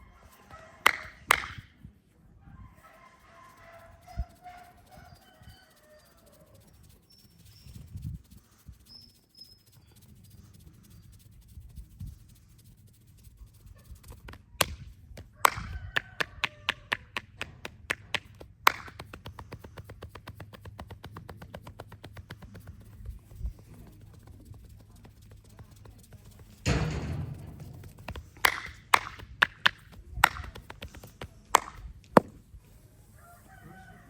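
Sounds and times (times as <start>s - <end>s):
hands slapping on body: 0.9s - 1.6s, 14.2s - 22.9s, 27.8s - 32.3s.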